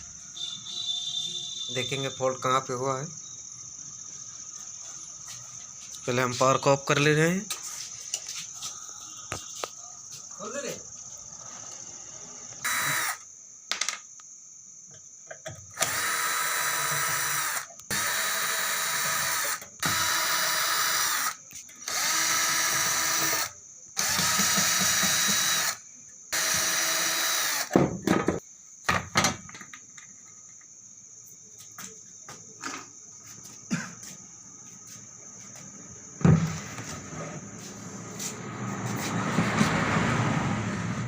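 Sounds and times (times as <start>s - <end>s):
crickets chirring: 0.0s - 41.0s
electric drill-driver whining: 12.5s - 13.3s, 15.7s - 27.8s.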